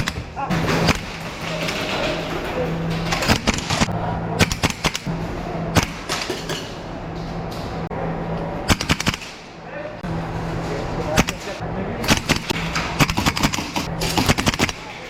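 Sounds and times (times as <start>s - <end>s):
steady low hum: 0.0s - 15.0s
airsoft gun shots: 8.7s - 9.4s.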